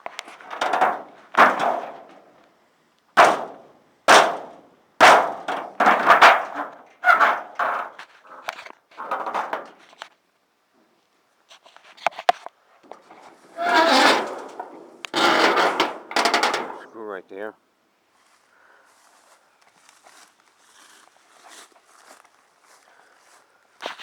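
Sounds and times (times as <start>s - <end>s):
wall panels banging and clattering: 0.0s - 2.4s, 3.2s - 10.0s, 12.9s - 16.9s.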